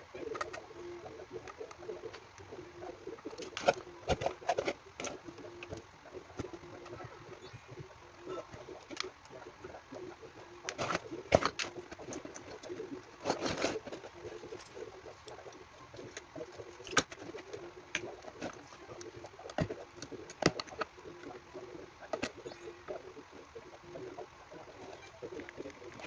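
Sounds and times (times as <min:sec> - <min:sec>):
tools and parts clicking: 0:10.7 - 0:18.8.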